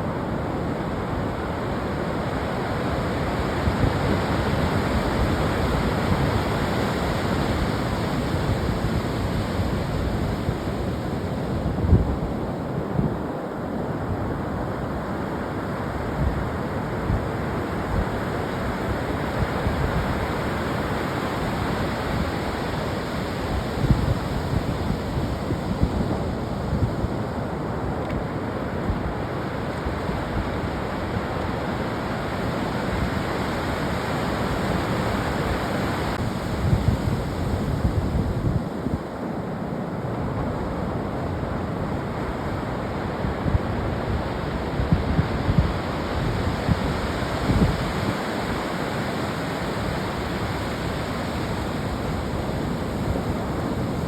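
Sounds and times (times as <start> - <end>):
ocean surf washing onto beach: 0.0 - 54.0
wind buffeting microphone: 32.0 - 39.2, 40.2 - 54.0.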